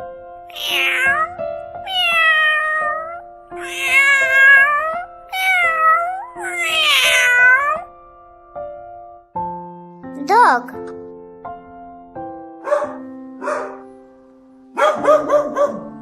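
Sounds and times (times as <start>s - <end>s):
music with held keyboard notes: 0.0s - 0.5s, 2.9s - 16.0s
cat meowing: 0.5s - 7.9s.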